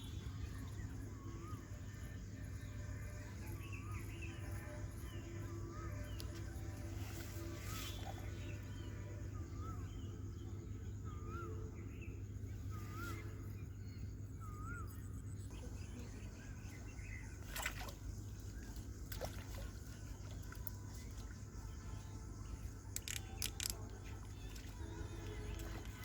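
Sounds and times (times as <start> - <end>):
sharp clicks: 23.0 - 23.9.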